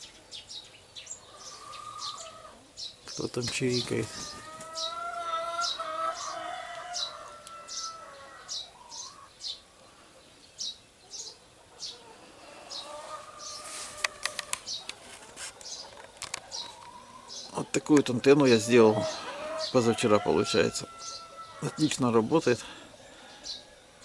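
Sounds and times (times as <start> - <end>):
small bird chirping: 0.0 - 23.8
sharp clicks: 14.0 - 15.0
wavering lower bird call: 18.4 - 21.8.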